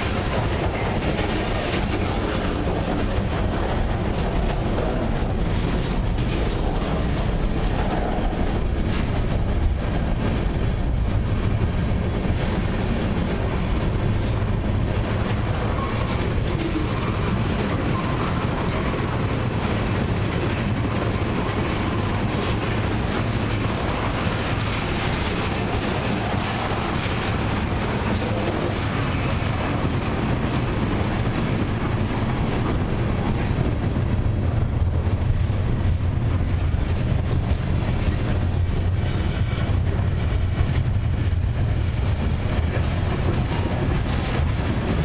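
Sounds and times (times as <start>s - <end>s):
steel wheels rumbling on rails: 0.0s - 45.0s.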